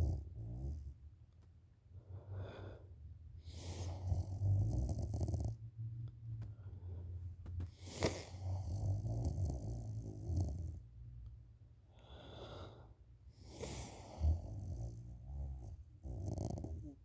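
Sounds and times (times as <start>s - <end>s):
breathy breath: 2.0s - 4.1s, 11.9s - 14.6s
woman snoring: 13.4s - 17.0s.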